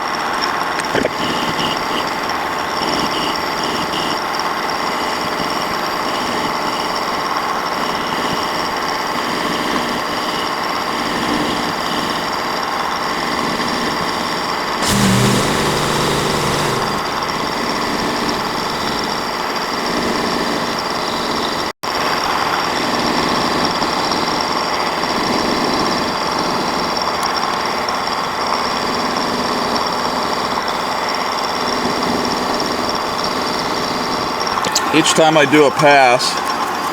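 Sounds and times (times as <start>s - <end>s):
metal lathe motor whine: 14.8s - 19.4s.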